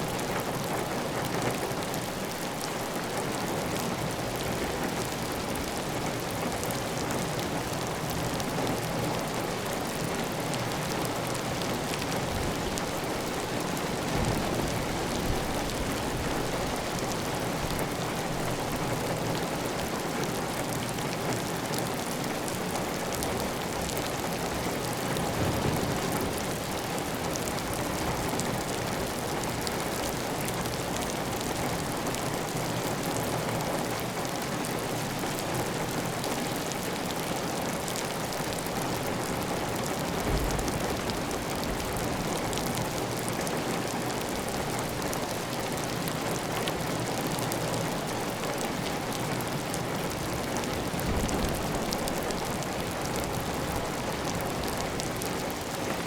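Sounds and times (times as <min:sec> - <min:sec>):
heavy rain on a tile roof: 0:00.0 - 0:56.0.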